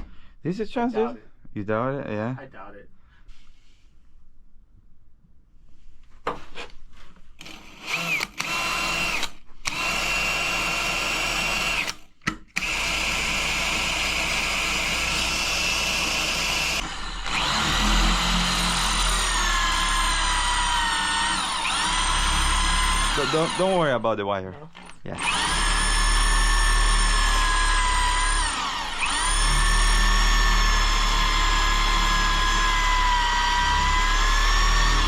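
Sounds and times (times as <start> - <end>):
electric drill drilling into metal: 7.4 - 24.0, 24.7 - 35.0.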